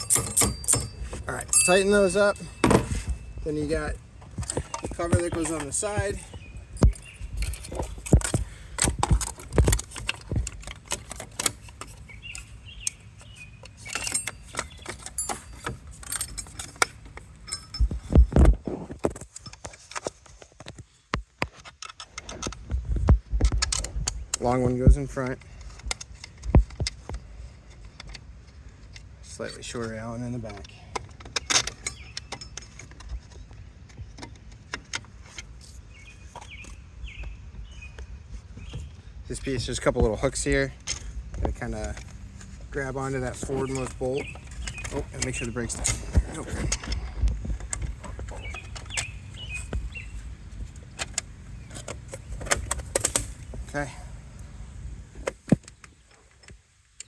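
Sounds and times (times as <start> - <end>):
short metallic rings: 0.0 - 3.9, 13.8 - 16.8, 17.4 - 18.1
metal hardware clinking: 0.0 - 13.0, 13.6 - 18.3, 30.4 - 33.4
bolts and plastic parts clicking: 0.0 - 36.8, 39.9 - 50.0, 50.6 - 54.0.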